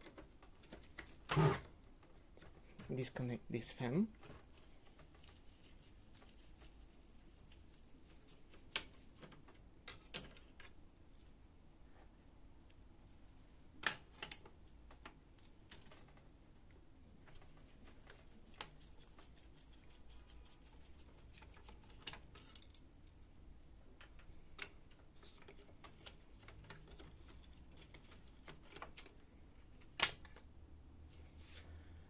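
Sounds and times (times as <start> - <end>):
clicks and taps of plastic parts: 8.7 - 10.8.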